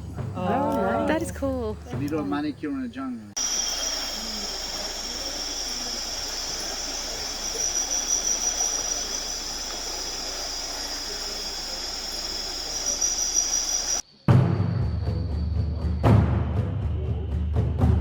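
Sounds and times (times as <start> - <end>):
insect chorus drone: 1.8 - 17.5.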